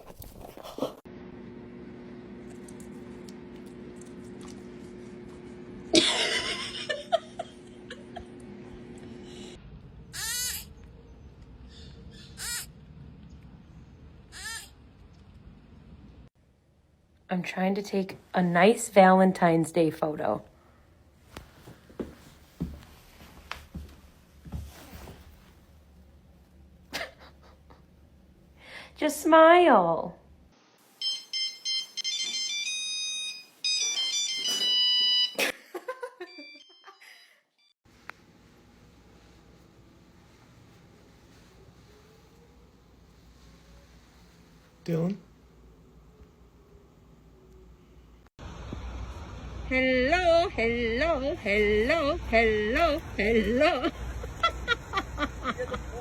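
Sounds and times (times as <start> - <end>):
animal calling: 10.1 - 10.9, 11.6 - 12.9, 14.2 - 14.8.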